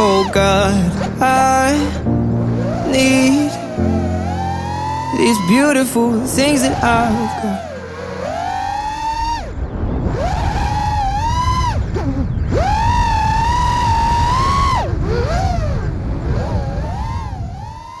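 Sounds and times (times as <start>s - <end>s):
low rumble: 0.0s - 13.3s
quadcopter motors whining: 0.0s - 18.0s.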